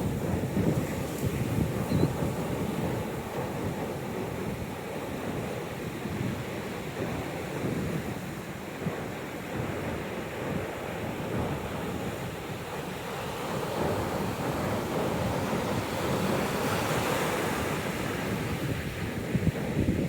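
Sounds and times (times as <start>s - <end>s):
wind buffeting microphone: 0.0s - 20.0s
ocean surf breaking: 11.3s - 19.8s.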